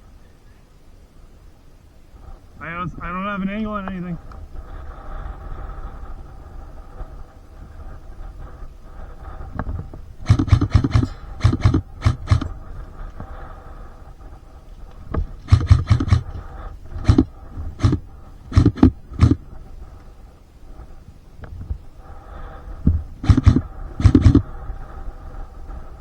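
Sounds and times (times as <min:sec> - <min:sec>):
faint steady hum: 0:00.0 - 0:26.0
heavy knocks and thumps: 0:10.3 - 0:12.5, 0:15.1 - 0:19.4, 0:22.9 - 0:24.5.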